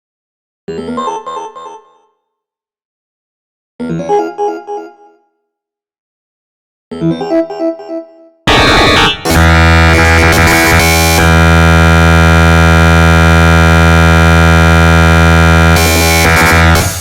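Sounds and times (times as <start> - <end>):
synthesizer ringtone chords: 3.9 - 5.3, 6.9 - 17.0.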